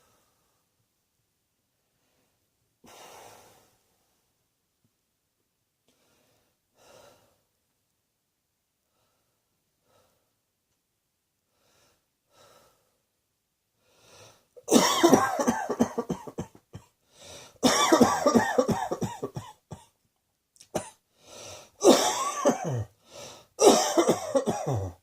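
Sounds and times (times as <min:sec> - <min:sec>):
quick breaths: 0:13.8 - 0:14.6, 0:17.0 - 0:17.6, 0:21.1 - 0:21.8, 0:23.0 - 0:23.6
person coughing hard: 0:14.6 - 0:16.9, 0:17.6 - 0:19.9, 0:20.7 - 0:21.0, 0:21.8 - 0:22.9, 0:23.6 - 0:25.0.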